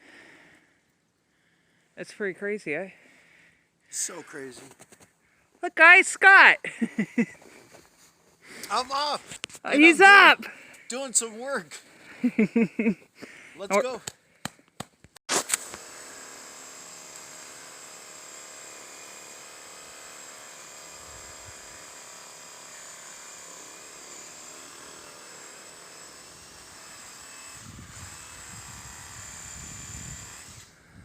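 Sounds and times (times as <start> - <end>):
power saw motor whining: 15.4 - 30.9.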